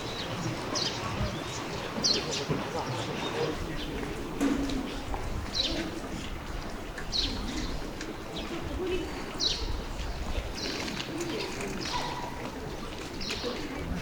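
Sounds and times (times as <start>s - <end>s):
pigeons cooing: 0.0s - 9.9s, 10.5s - 14.0s
small birds chirping: 9.3s - 13.6s.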